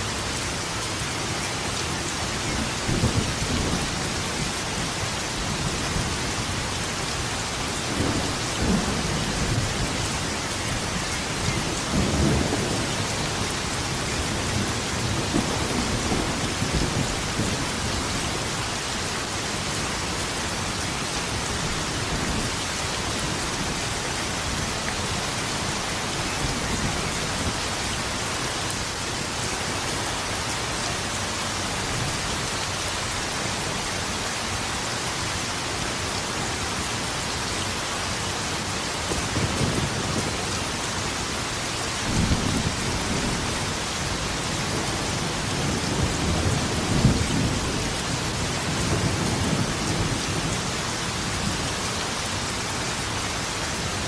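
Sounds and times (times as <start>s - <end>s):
heavy rain: 0.0s - 54.0s
low rolling thunder: 7.9s - 18.6s, 44.6s - 50.7s.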